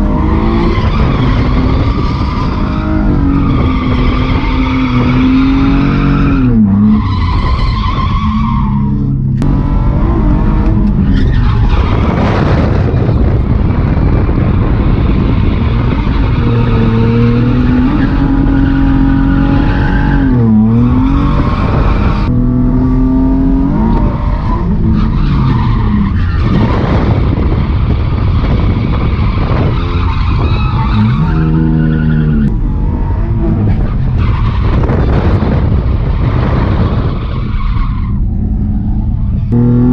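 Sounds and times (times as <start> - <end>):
tyres skidding: 0.0 - 39.9
car engine revving hard: 8.9 - 27.4, 38.3 - 39.9.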